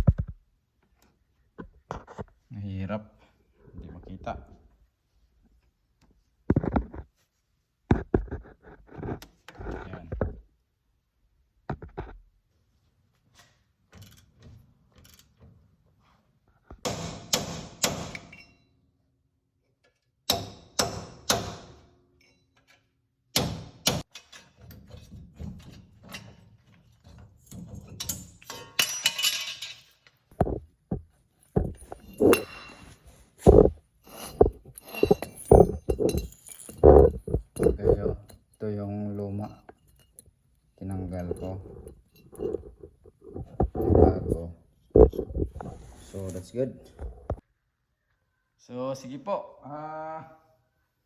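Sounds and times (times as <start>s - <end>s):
metal knocks and clangs: 24.1s - 45.8s.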